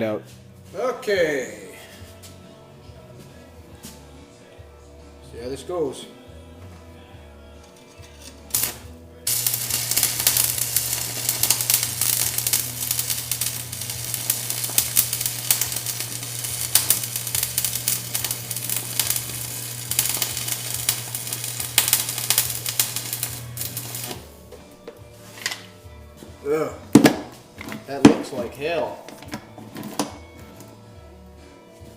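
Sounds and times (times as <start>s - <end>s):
welding arc crackling and sizzling: 8.4s - 24.4s
steady hum: 8.5s - 26.8s.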